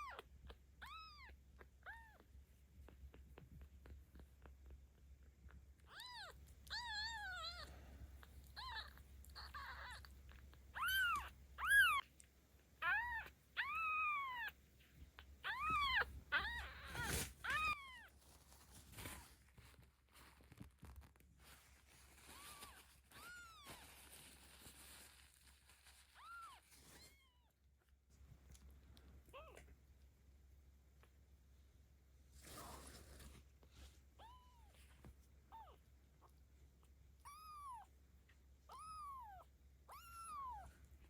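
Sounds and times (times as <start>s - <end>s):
kitten meowing: 0.0s - 2.3s, 5.8s - 7.7s, 8.4s - 12.1s, 12.8s - 14.6s, 15.2s - 18.1s, 22.3s - 23.9s, 26.1s - 27.4s, 29.3s - 29.7s, 34.2s - 34.8s, 35.5s - 36.3s, 37.2s - 37.9s, 38.7s - 40.8s.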